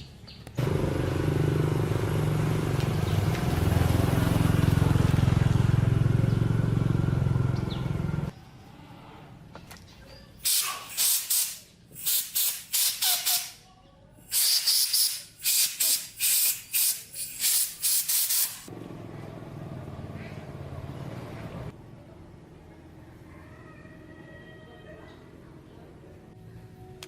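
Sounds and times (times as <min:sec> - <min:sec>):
pressurised spray hissing: 0:10.4 - 0:13.5, 0:14.3 - 0:18.7.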